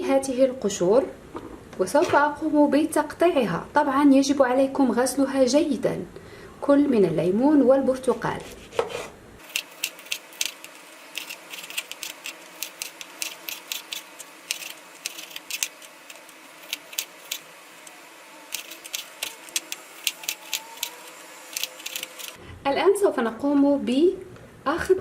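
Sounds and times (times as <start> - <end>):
knife chopping peels: 8.4 - 22.4.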